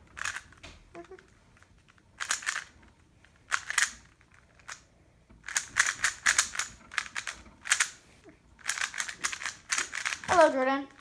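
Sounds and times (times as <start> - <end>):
plastic cube clicking: 0.1 - 2.8, 3.4 - 4.8, 5.4 - 8.0, 8.6 - 10.5.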